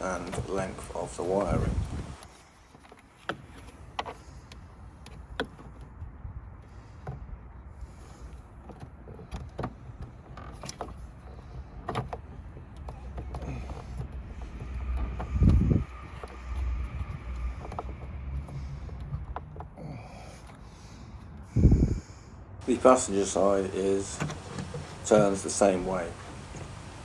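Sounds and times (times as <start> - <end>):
clicks of plastic parts: 24.0 - 27.0.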